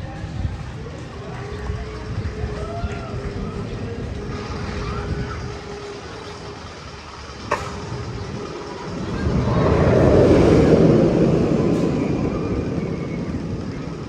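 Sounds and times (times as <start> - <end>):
roller coaster train rumbling past: 0.0 - 14.0.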